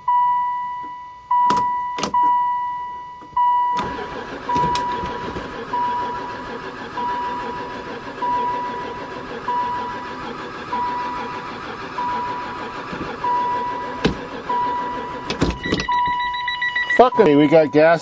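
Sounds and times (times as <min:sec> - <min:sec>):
dashboard warning chime: 0:00.0 - 0:18.0
engine starter cranking: 0:03.6 - 0:18.0.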